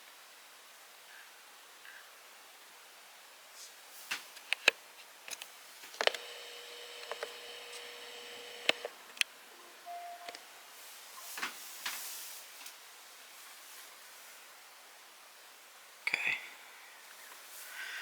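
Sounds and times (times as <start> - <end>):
faint steady electronic tone: 6.0 - 11.3
short beep: 9.6 - 10.4.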